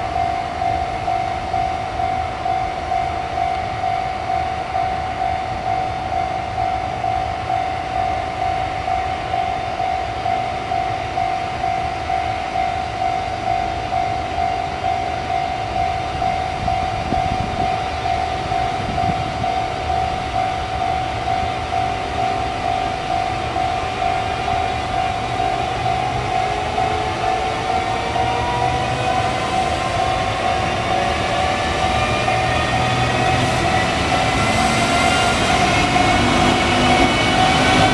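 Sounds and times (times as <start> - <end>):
level-crossing bell ringing: 0.0 - 37.9
train motor whine: 15.6 - 37.9.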